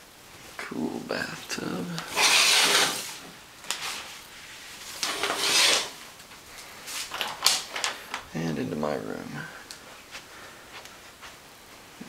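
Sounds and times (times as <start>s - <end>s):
loud sliding scrapes: 2.0s - 6.0s.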